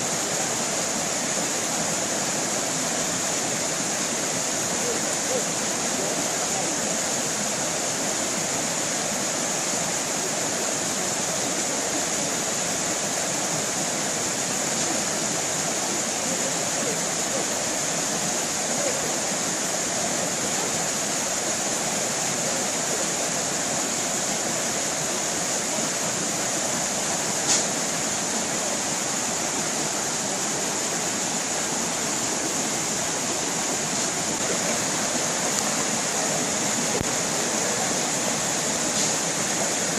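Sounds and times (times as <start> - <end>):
stream water flowing: 0.0 - 39.9
brief click: 27.5 - 27.7.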